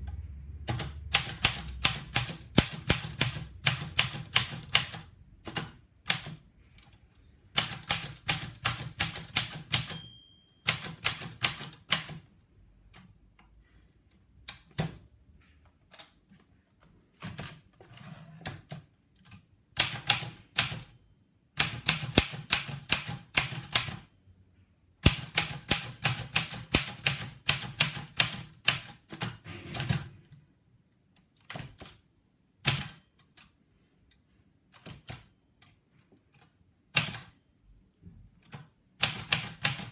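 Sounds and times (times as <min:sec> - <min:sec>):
typewriter bell ring: 0:09.7 - 0:11.4.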